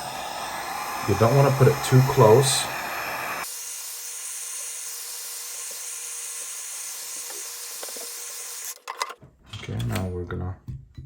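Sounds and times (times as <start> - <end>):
heat gun blowing hot air: 0.0 - 8.8.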